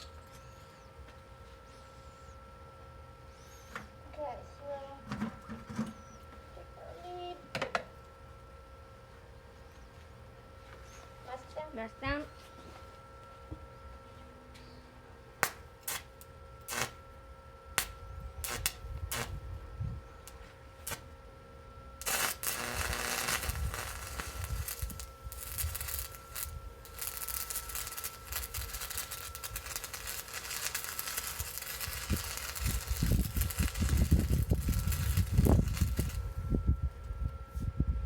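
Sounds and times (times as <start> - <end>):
arc welding crackling sizzle: 15.4 - 21.2, 22.0 - 36.6.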